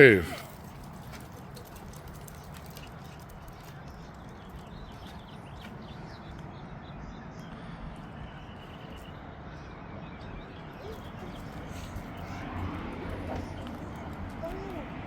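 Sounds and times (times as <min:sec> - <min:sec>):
dogs' feet clicking and scuffling: 0:00.0 - 0:06.6, 0:10.7 - 0:15.0.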